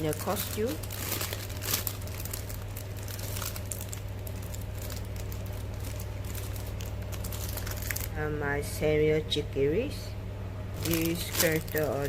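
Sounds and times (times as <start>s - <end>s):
plastic packaging crinkling: 0.0s - 8.2s, 10.8s - 12.0s
low electrical hum: 0.0s - 12.0s.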